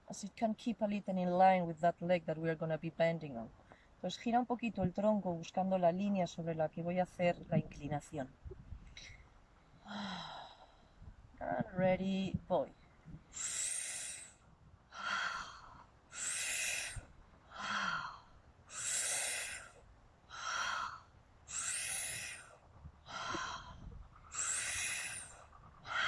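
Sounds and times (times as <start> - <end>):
woman breathing loudly: 9.8 - 11.2, 13.2 - 26.0.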